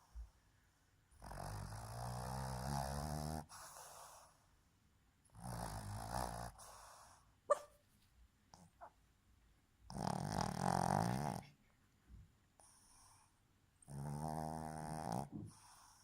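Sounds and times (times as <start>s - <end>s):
dog snoring: 1.1s - 4.3s, 5.3s - 7.0s, 9.9s - 11.6s, 12.6s - 16.0s.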